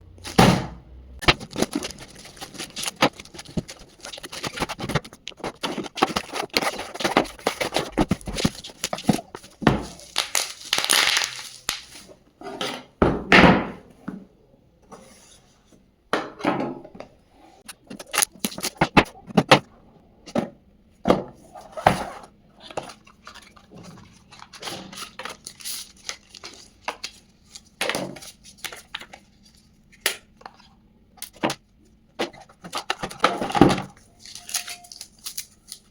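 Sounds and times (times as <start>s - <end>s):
cardboard packaging rustling: 1.2s - 12.2s, 21.6s - 29.6s, 32.3s - 35.9s.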